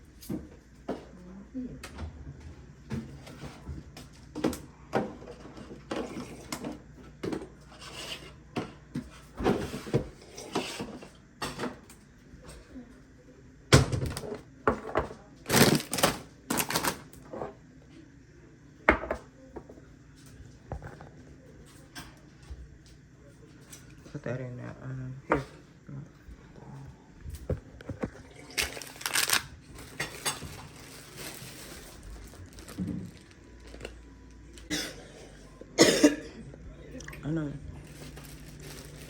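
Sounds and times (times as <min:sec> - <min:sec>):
groceries knocking and rustling: 0:13.8 - 0:17.6, 0:27.3 - 0:34.6, 0:37.7 - 0:39.0.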